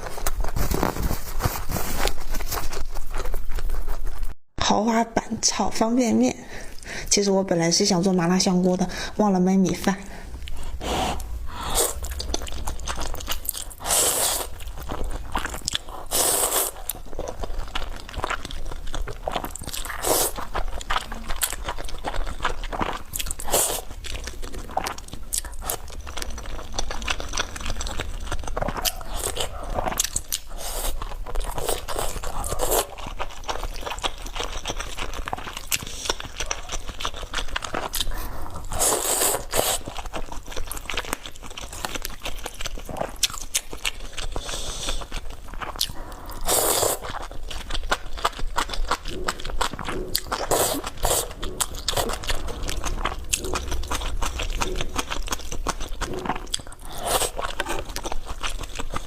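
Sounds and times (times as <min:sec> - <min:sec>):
person chewing crunchy food: 0:00.0 - 0:04.4, 0:10.2 - 0:59.0
wet chewing clicks: 0:10.4 - 0:59.0.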